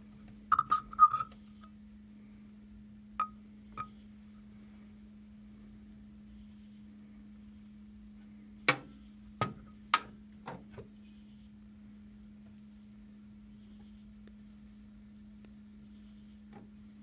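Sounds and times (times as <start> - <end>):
high cricket-like trill: 0.0 - 4.5
steady low hum: 0.0 - 12.2.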